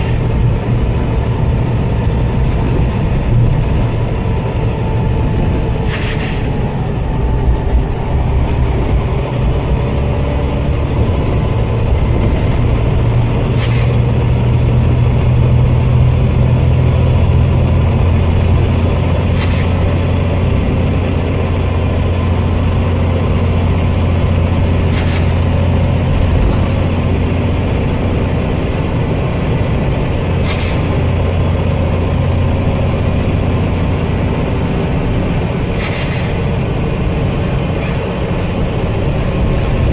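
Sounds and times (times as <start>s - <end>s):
bus engine drone: 0.0s - 39.9s
air brake sneezes: 5.8s - 6.6s, 13.6s - 14.0s, 19.4s - 19.8s, 24.9s - 25.4s, 30.4s - 31.0s, 35.8s - 36.4s.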